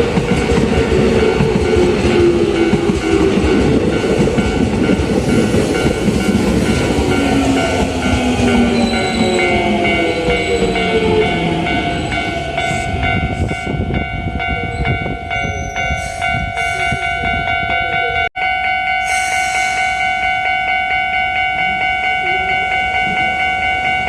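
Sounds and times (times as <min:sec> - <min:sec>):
train running rumble: 0:00.0 - 0:18.3
level crossing warning bell: 0:00.0 - 0:24.0.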